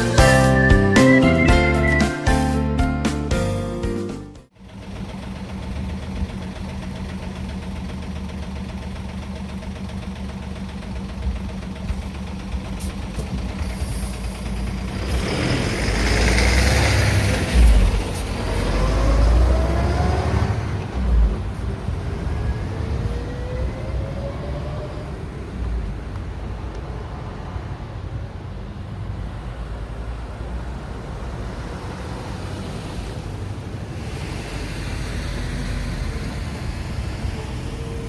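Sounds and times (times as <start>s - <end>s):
vehicle engine idling: 4.5s - 19.8s
vehicles accelerating past: 12.2s - 38.0s.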